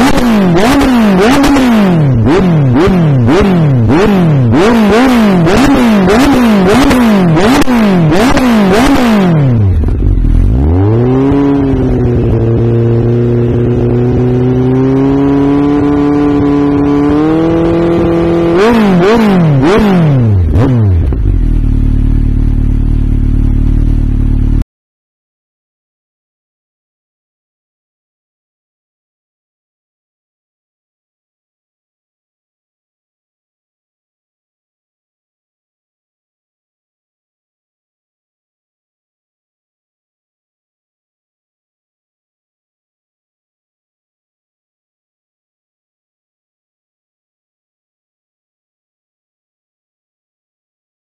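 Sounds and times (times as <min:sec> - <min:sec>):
motorcycle engine revving: 0:00.0 - 0:24.6.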